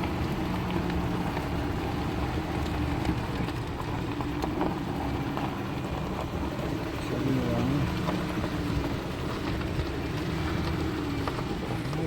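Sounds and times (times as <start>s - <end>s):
car engine and road hum: 0.0s - 12.0s
tyres and body clicking: 0.0s - 12.0s.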